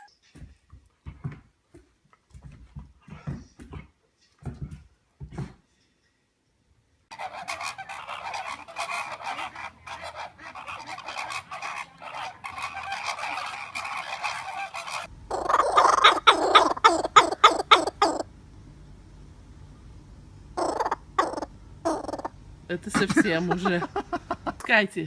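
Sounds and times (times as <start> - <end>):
sharp rapid bird calls: 7.1 - 18.2, 20.6 - 22.3
birds chattering: 7.1 - 18.3, 20.6 - 24.6.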